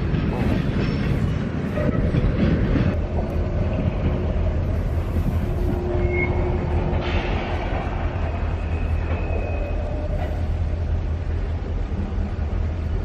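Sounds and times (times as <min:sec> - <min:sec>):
train rumbling: 0:00.0 - 0:13.0
faint high squeals: 0:05.8 - 0:06.8, 0:08.3 - 0:10.6.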